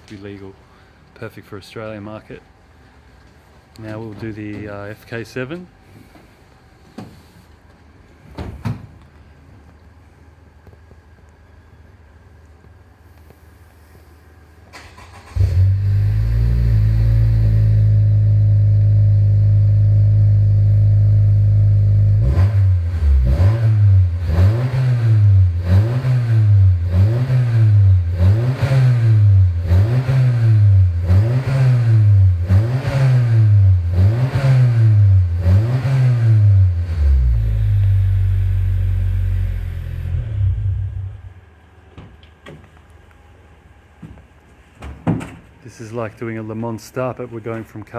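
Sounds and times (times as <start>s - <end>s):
car engine starting and idling: 14.6s - 41.4s
car engine revving: 15.0s - 41.3s.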